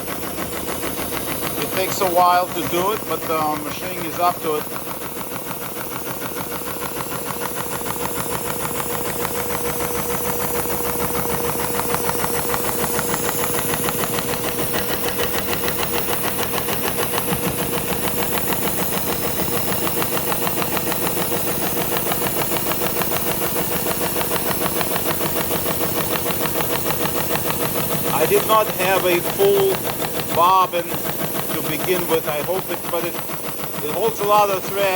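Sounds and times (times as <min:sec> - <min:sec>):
air cooler running: 0:00.0 - 0:34.9
sewing machine clattering: 0:00.0 - 0:34.9.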